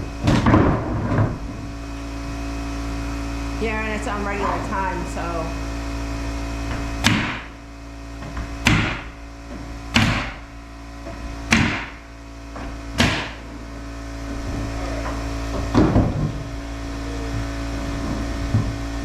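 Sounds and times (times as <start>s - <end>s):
steady machine hum: 0.0s - 19.0s
hammer striking nails: 6.7s - 7.5s, 8.2s - 9.2s, 9.9s - 10.4s, 11.5s - 12.0s, 12.6s - 13.4s.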